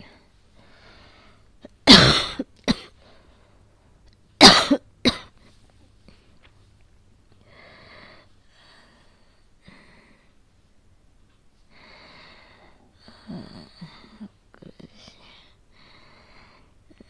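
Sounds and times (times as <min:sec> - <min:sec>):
woman coughing: 0:01.8 - 0:03.0, 0:04.4 - 0:05.4.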